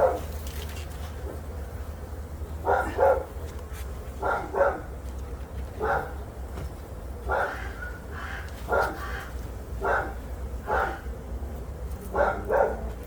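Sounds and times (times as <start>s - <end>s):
dog barking: 0.0s - 0.3s, 2.6s - 3.3s, 4.2s - 4.9s, 5.8s - 6.2s, 7.3s - 8.0s, 8.7s - 9.1s, 9.8s - 11.1s, 12.1s - 13.0s.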